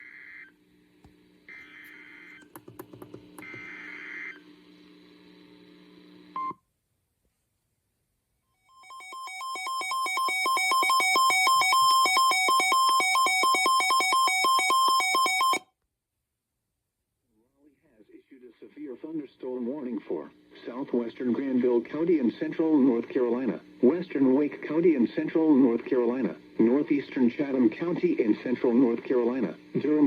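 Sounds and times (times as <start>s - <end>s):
faint hum: 0.0s - 6.7s, 17.3s - 30.0s.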